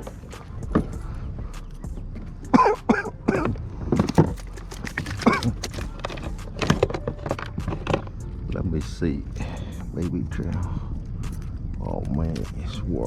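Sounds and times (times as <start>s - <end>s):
wind rumble on microphone: 6.3s - 13.0s.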